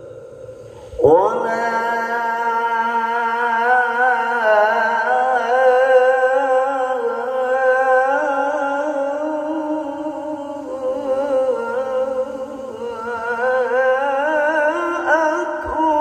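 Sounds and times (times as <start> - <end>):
man chanting long wavering note: 0.0 - 16.0.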